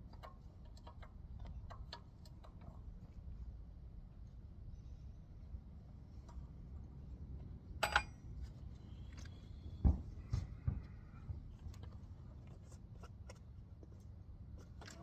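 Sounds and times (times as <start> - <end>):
metal tools clinking: 7.8 - 8.2.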